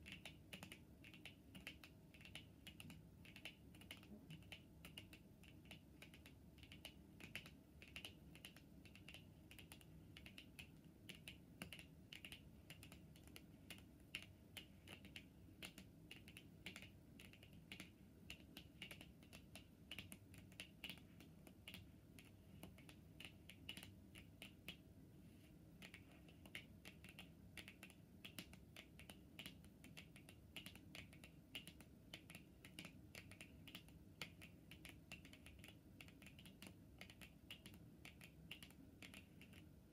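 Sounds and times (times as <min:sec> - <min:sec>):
fingernails tapping on cards: 0:25.8 - 0:39.7.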